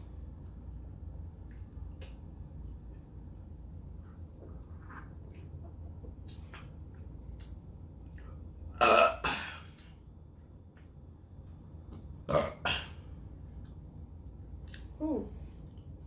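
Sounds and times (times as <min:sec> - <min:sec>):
person burping loudly: 0:08.8 - 0:09.7, 0:12.3 - 0:12.9.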